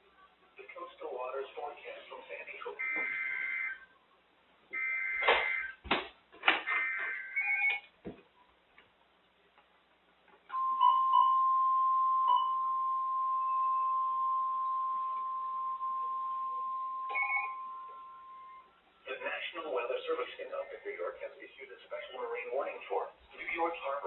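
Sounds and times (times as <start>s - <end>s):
steady alarm tone: 2.8s - 3.8s, 4.8s - 5.8s, 10.6s - 18.8s.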